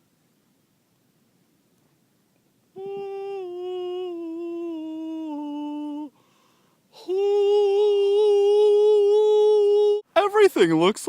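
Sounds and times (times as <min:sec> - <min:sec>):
person humming held notes: 0:02.7 - 0:06.2, 0:06.9 - 0:10.0.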